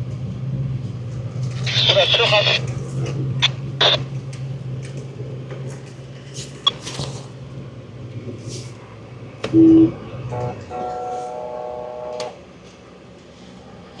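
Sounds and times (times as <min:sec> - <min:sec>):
engine humming: 0:00.0 - 0:14.0
loud steady beep: 0:09.5 - 0:12.4.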